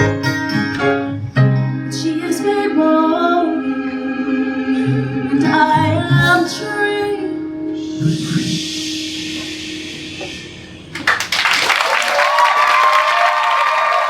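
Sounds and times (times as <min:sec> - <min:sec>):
vocal ensemble singing in harmony: 0:02.2 - 0:10.8.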